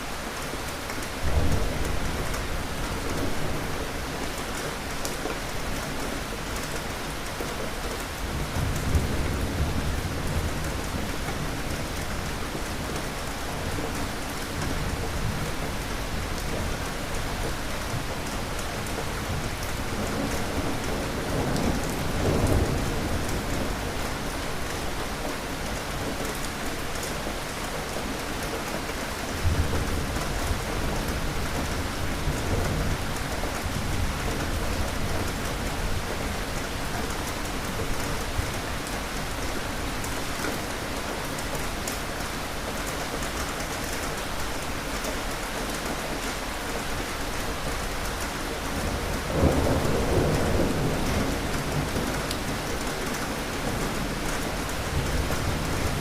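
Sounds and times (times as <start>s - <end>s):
heavy rain: 0.0s - 56.0s
thunder rumbling: 48.8s - 56.0s.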